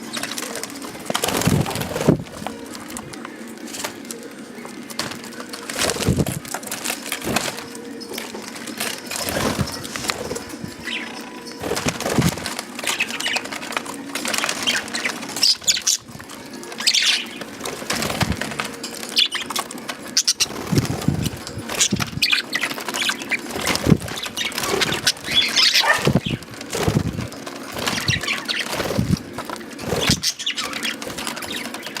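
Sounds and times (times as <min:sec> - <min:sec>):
birds eating clicks: 0:00.0 - 0:32.0
budgerigars chirping: 0:09.2 - 0:13.8, 0:14.4 - 0:16.1, 0:16.8 - 0:18.2, 0:19.0 - 0:32.0.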